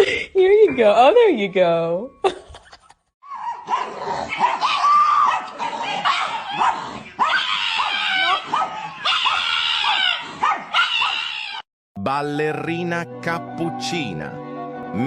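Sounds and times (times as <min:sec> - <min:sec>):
dog yipping and whining: 0:03.2 - 0:11.6.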